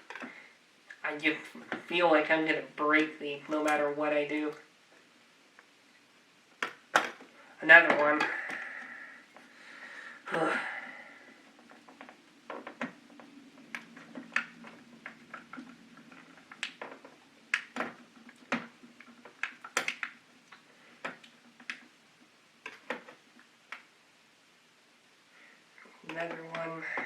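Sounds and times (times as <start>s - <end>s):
plastic case clips clicking: 13.7s - 21.9s.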